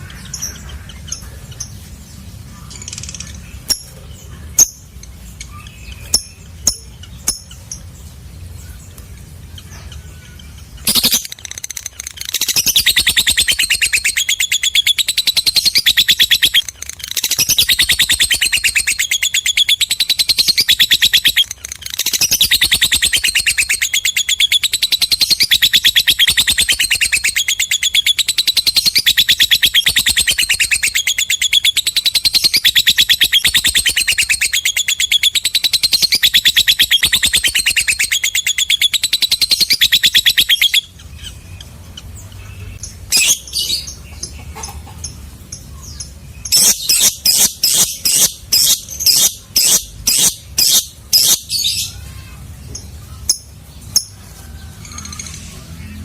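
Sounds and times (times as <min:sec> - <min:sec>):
bird chirps: 0:00.0 - 0:56.0
lovebird chattering trill: 0:09.6 - 0:52.3.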